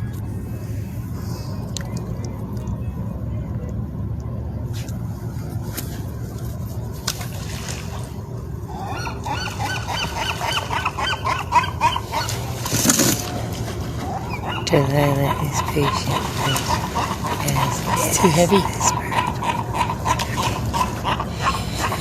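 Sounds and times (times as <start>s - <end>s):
steady low rumble: 0.0s - 22.0s.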